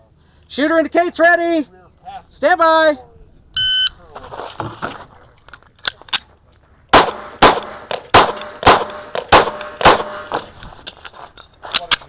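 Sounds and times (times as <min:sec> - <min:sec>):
pistol shots: 0:06.9 - 0:10.4.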